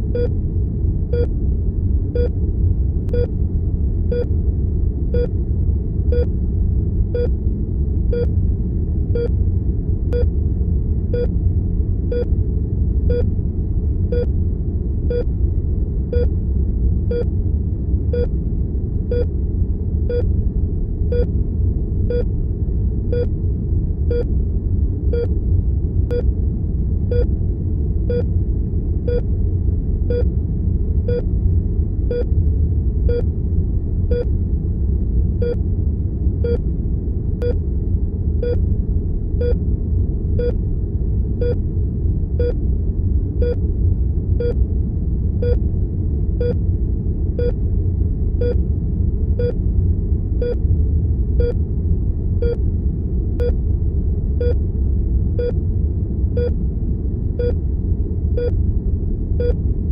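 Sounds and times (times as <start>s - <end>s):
low equipment hum: 0.0s - 59.9s
heart monitor beeping: 3.1s - 3.3s, 4.1s - 4.3s, 8.1s - 8.3s, 16.1s - 16.3s, 18.1s - 18.3s, 23.1s - 23.3s, 25.1s - 25.3s, 28.1s - 28.3s, 31.1s - 31.3s, 33.1s - 33.3s, 35.4s - 35.6s, 36.4s - 36.6s, 41.4s - 41.6s, 43.4s - 43.6s, 44.4s - 44.6s, 48.4s - 48.6s, 50.4s - 50.6s, 54.4s - 54.6s, 56.4s - 56.6s, 57.4s - 57.6s, 58.4s - 58.6s, 59.4s - 59.6s.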